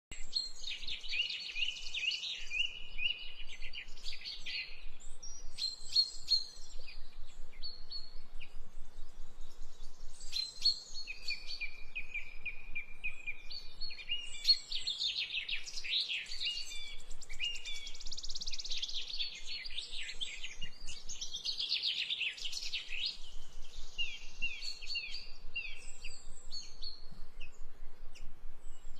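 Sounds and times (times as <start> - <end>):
birds chirping: 0.2 - 28.9.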